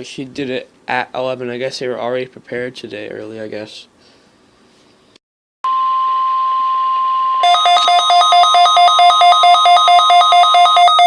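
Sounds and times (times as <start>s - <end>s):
alternating two-pitch alarm: 5.7s - 11.0s
emergency alarm tone: 5.7s - 11.0s.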